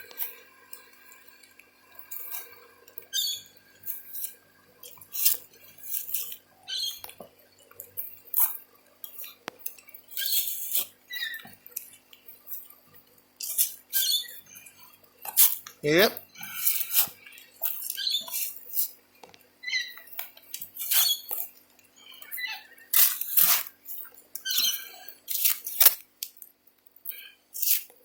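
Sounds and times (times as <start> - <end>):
soil scraping and rustling: 22.9 - 26.0.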